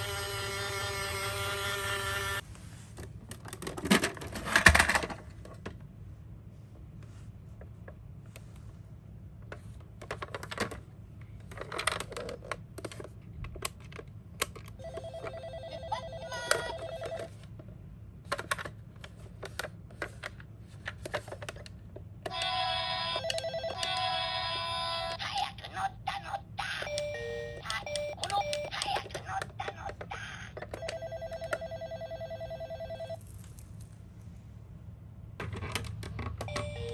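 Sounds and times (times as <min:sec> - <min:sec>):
plastic toy cars clattering: 0:03.3 - 0:05.8, 0:09.5 - 0:15.1, 0:18.3 - 0:22.0
electronic toy tone: 0:26.8 - 0:29.0, 0:36.5 - 0:36.9.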